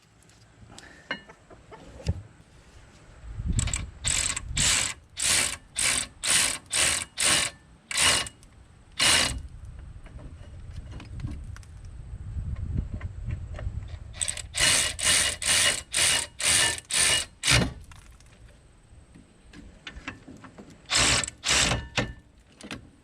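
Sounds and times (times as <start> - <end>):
ratchet wrench clicking: 3.6 - 8.4, 14.2 - 17.5.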